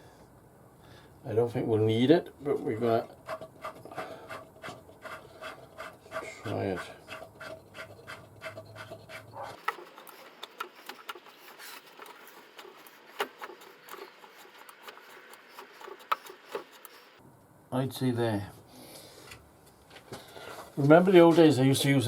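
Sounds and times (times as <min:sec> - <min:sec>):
faint rubbing: 0:02.5 - 0:17.2
wooden parts clicking and knocking: 0:03.0 - 0:17.2.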